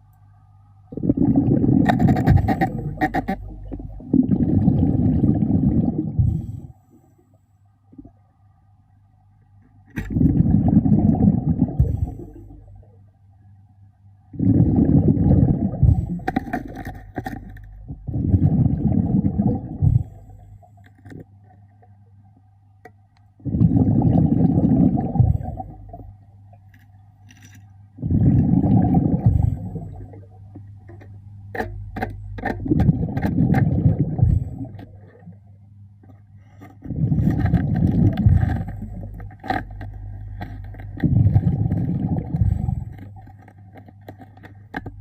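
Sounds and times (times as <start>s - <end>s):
faint low hum: 0.0s - 45.0s
exhaled air bubbles underwater: 0.9s - 6.7s, 10.0s - 13.0s, 14.3s - 21.2s, 23.4s - 26.2s, 28.0s - 30.7s, 31.6s - 35.5s, 36.8s - 45.0s.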